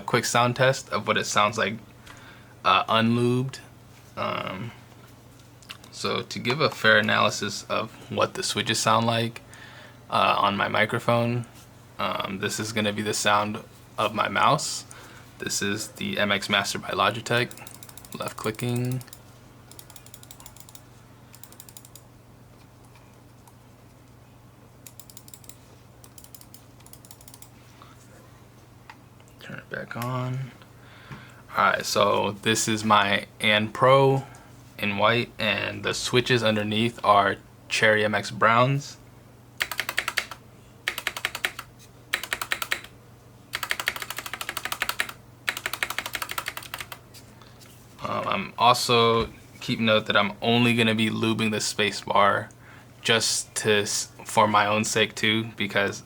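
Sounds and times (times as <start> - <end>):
typing on mechanical keyboard: 17.5 - 20.8, 21.4 - 22.0, 24.9 - 27.5, 39.6 - 42.9, 43.5 - 47.0.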